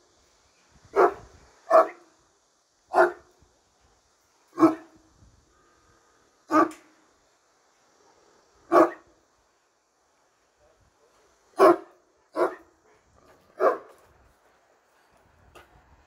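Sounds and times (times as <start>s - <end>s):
large dog barking: 0.9s - 2.1s, 2.9s - 3.3s, 4.5s - 5.0s, 6.5s - 6.9s, 8.7s - 9.2s, 11.6s - 14.0s.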